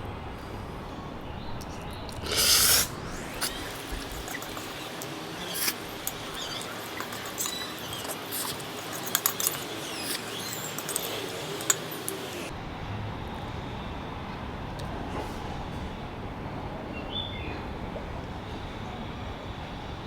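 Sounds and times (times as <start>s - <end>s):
steady hiss: 0.4s - 12.5s
eating noodles with slurps: 1.6s - 12.5s.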